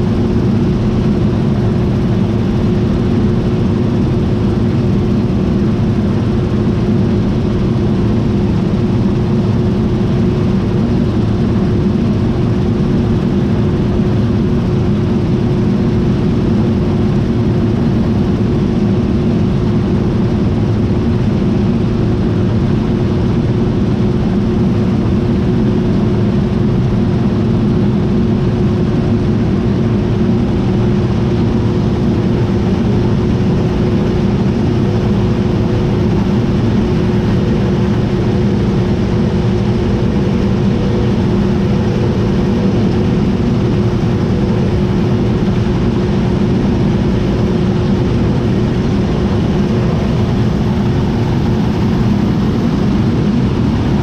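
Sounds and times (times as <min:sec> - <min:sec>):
combine harvester droning: 0:27.7 - 0:54.0.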